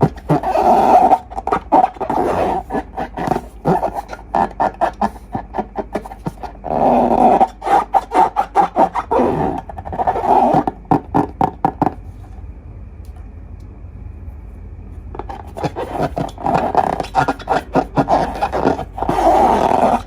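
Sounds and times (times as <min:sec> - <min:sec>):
slime squelching: 0:00.0 - 0:11.4.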